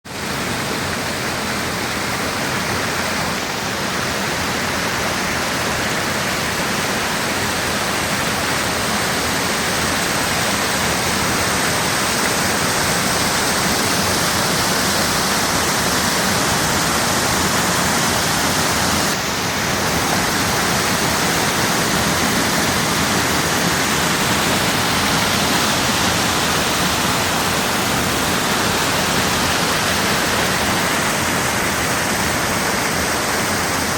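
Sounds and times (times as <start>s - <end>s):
waterfall rushing: 0.1s - 33.9s.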